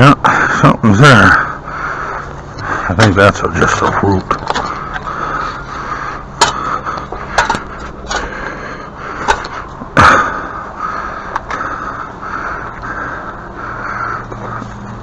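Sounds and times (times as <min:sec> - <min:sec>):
digging tool striking soil: 0:06.4 - 0:06.7, 0:07.3 - 0:08.3.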